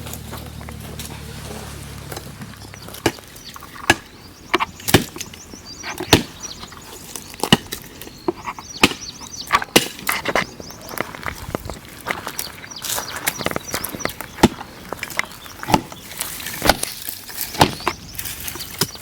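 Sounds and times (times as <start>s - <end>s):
wood snapping and knocking: 2.0s - 19.0s.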